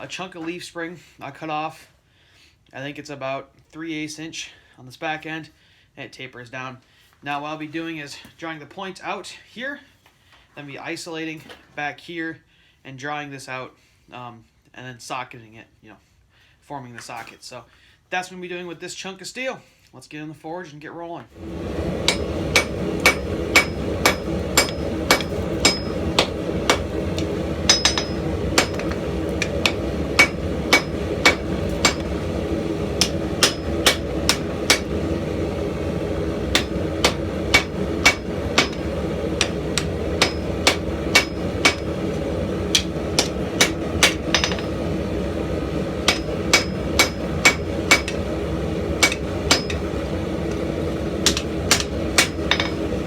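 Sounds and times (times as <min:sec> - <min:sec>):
hammer striking steel on anvil: 0:22.0 - 0:32.3, 0:32.9 - 0:35.0, 0:36.5 - 0:44.8, 0:46.0 - 0:48.3, 0:49.0 - 0:49.9, 0:51.2 - 0:53.0.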